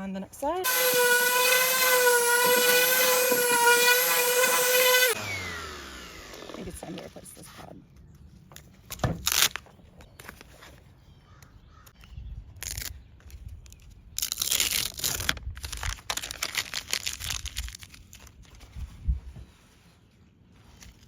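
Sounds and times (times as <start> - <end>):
sanding disc tearing off pad: 0.6 - 7.1
disc crinkling: 12.6 - 21.0.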